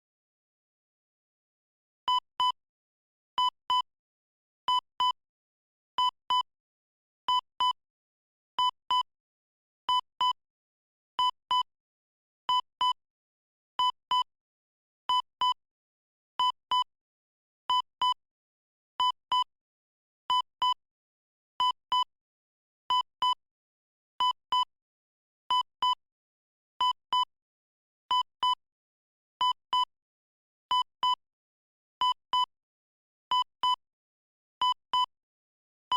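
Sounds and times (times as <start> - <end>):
heart monitor beeps: 2.1 - 2.6, 3.4 - 3.9, 4.7 - 5.2, 6.0 - 6.5, 7.3 - 7.8, 8.6 - 9.1, 9.9 - 10.4, 11.2 - 11.7, 12.5 - 13.0, 13.8 - 14.3, 15.1 - 15.6, 16.4 - 16.9, 17.7 - 18.2, 19.0 - 19.5, 20.3 - 20.8, 21.6 - 22.1, 22.9 - 23.4, 24.2 - 24.7, 25.5 - 26.0, 26.8 - 27.3, 28.1 - 28.6, 29.4 - 29.9, 30.7 - 31.2, 32.0 - 32.5, 33.3 - 33.8, 34.6 - 35.1.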